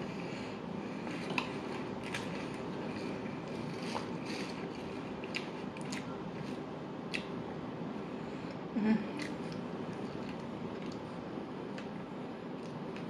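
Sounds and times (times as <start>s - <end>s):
steady background hum: 0.0s - 13.0s
wet chewing clicks: 1.1s - 7.3s, 9.2s - 11.1s.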